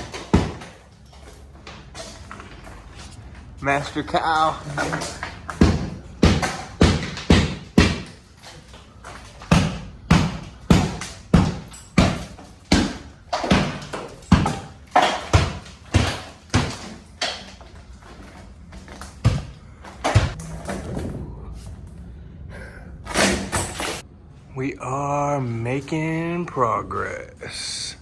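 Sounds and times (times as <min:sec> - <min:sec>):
sharp blows on wood: 0:04.6 - 0:17.6.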